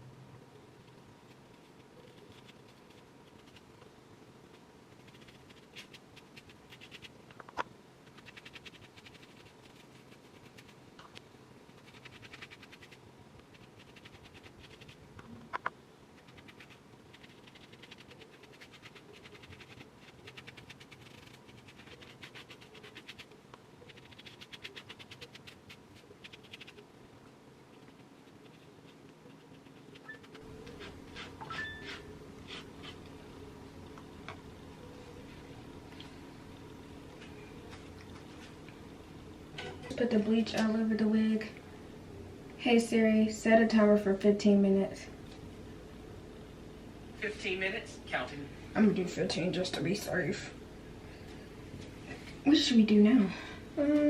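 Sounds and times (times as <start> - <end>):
brush scratching over lace: 0.8 - 3.8, 4.5 - 7.2, 8.0 - 10.8, 11.7 - 15.1, 16.2 - 26.8, 27.7 - 33.1.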